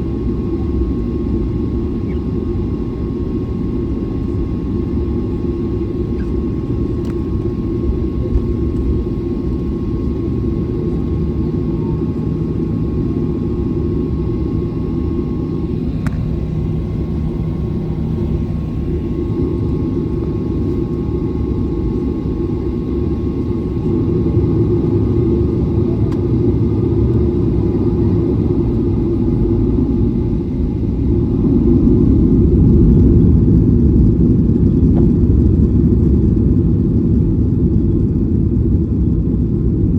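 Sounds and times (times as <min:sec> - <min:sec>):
faint steady whine: 0:00.0 - 0:34.1
jet engines rumbling: 0:00.0 - 0:39.9.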